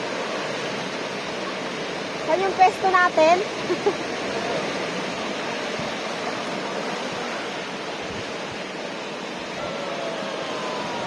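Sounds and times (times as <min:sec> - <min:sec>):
ocean waves breaking on beach: 0:00.0 - 0:11.0.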